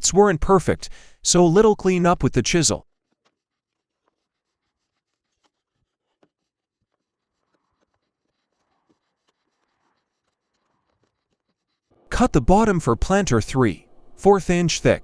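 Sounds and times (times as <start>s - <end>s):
wood chisel scraping: 2.9s - 12.7s.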